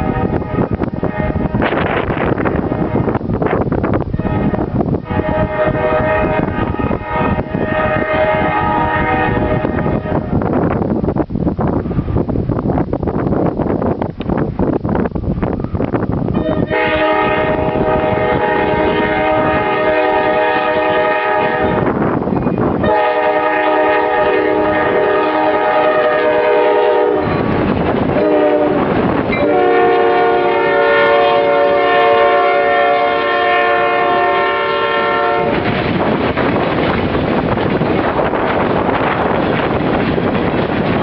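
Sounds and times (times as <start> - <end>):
locomotive air horn blasts: 0.0 - 3.2, 4.2 - 10.4, 16.4 - 22.0, 22.8 - 27.5, 28.2 - 35.6
train rumble: 0.0 - 41.0
wind on microphone: 0.0 - 41.0.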